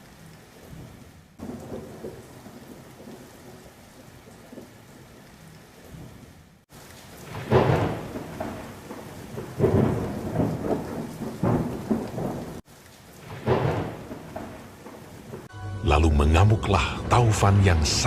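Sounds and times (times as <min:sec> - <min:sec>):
steady rain: 0:00.0 - 0:18.0
rolling thunder: 0:00.8 - 0:04.8, 0:07.2 - 0:12.6, 0:13.2 - 0:15.5.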